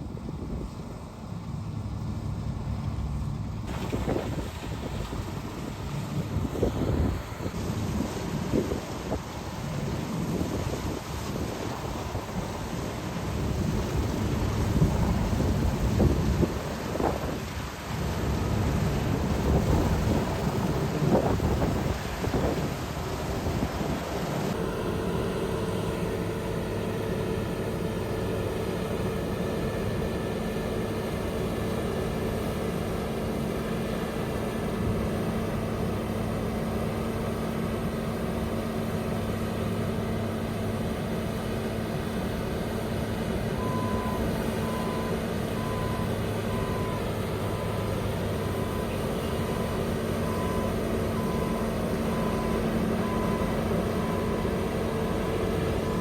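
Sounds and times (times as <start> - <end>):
heavy vehicle engine running: 0.0 - 56.0
reversing alarm beeping: 43.6 - 56.0.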